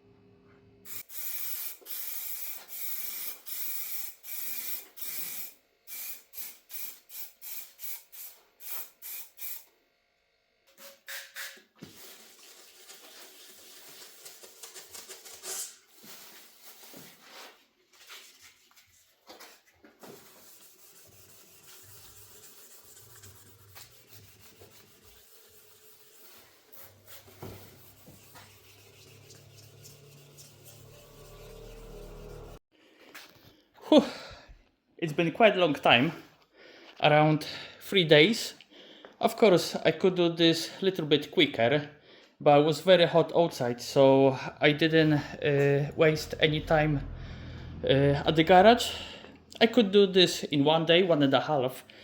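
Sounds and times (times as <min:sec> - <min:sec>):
hand sanding body filler: 0:20.0 - 0:32.6.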